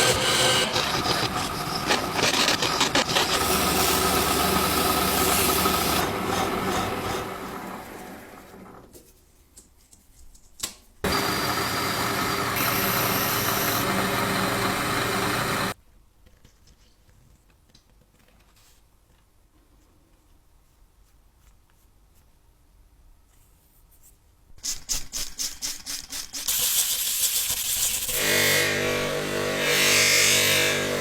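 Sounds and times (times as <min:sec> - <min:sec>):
film projector mechanism running: 0:00.1 - 0:08.8, 0:11.1 - 0:15.8.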